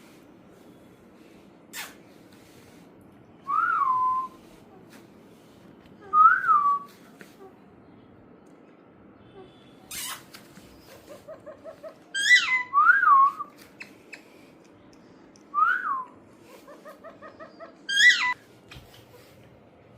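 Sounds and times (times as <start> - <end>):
bird whistling: 12.2 - 13.5, 17.9 - 18.4.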